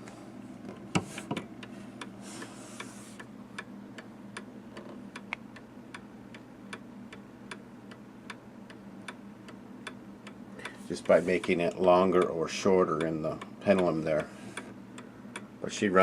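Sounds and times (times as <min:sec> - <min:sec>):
mantle clock ticking: 0:05.1 - 0:16.0.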